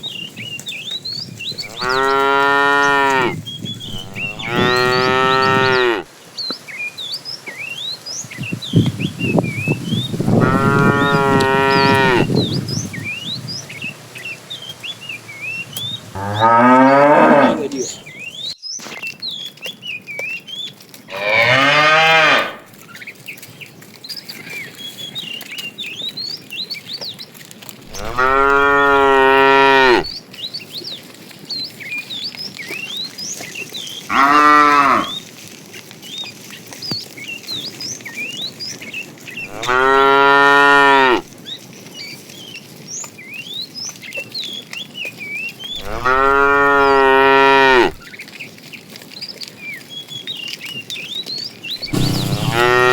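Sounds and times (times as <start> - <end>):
cows mooing: 1.6 - 6.1, 10.3 - 12.6, 16.1 - 18.0, 21.1 - 22.7, 27.9 - 30.2, 34.1 - 35.2, 39.5 - 41.2, 45.8 - 48.0, 51.8 - 52.9.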